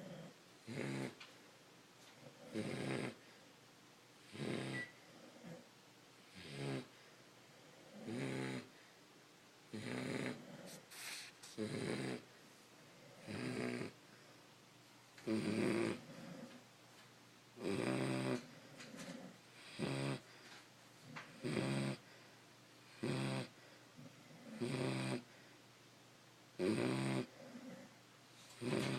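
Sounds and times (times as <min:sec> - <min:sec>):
dogs snoring: 0:00.0 - 0:01.4, 0:02.1 - 0:03.4, 0:04.2 - 0:08.9, 0:09.7 - 0:14.1, 0:15.2 - 0:16.7, 0:17.6 - 0:22.2, 0:22.8 - 0:25.5, 0:26.6 - 0:28.9.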